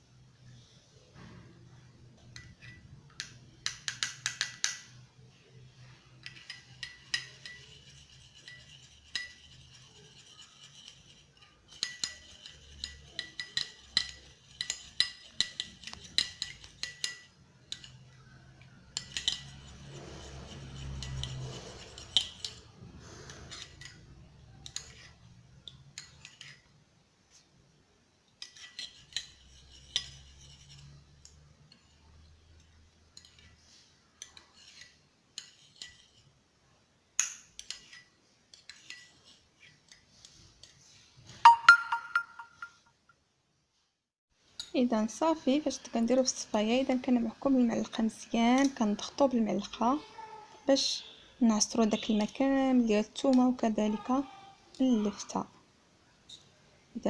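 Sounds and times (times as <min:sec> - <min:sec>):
spoon clinking against a sieve: 0:06.2 - 0:22.6.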